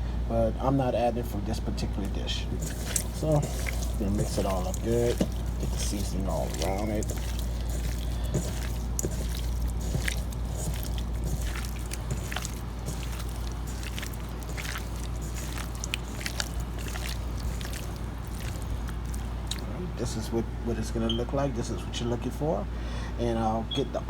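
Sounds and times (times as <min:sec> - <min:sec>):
steady low hum: 0:00.0 - 0:23.8
wet squishing of raw meat: 0:02.0 - 0:19.8.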